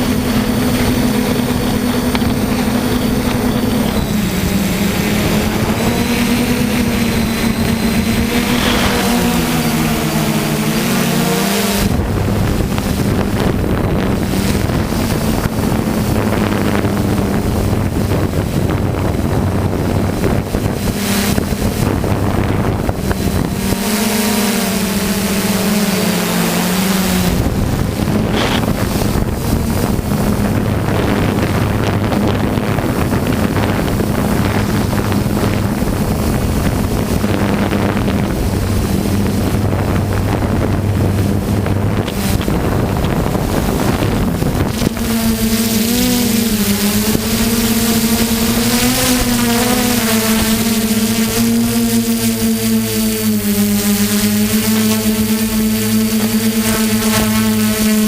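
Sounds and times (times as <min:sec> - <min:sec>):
quadcopter propellers humming: 0:00.0 - 0:58.0
wind noise on microphone: 0:00.0 - 0:58.0.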